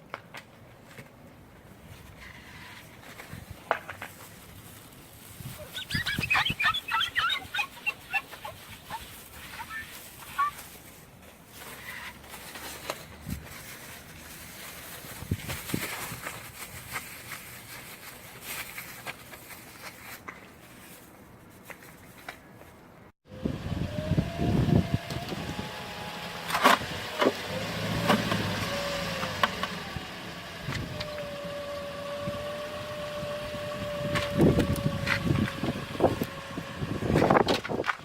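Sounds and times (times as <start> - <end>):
car engine running with whine: 23.3 - 37.4.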